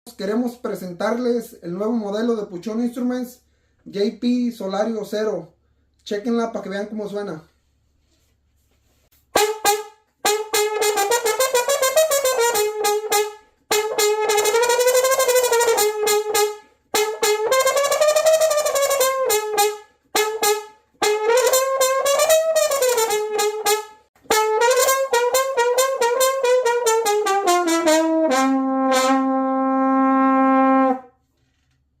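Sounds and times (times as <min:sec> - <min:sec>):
player breathing: 0:03.4 - 0:03.9
solo trumpet: 0:09.2 - 0:31.2.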